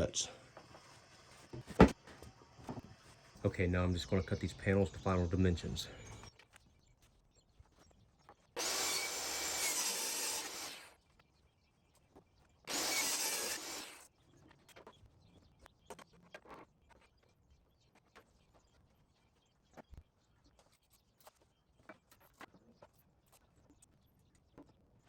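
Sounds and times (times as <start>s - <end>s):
saw cutting wood: 0.0s - 3.5s, 8.6s - 10.9s, 12.7s - 14.0s.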